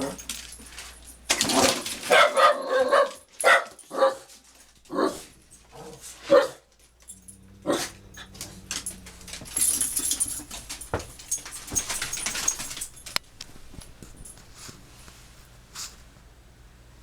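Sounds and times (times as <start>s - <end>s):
dog barking: 1.5s - 4.3s, 4.9s - 9.9s
scuffling and rustling: 7.9s - 16.1s.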